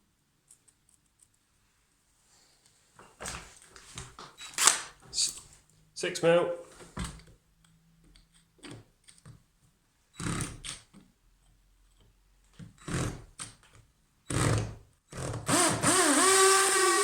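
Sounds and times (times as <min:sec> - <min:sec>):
cordless drill motor whine: 0:15.5 - 0:17.0.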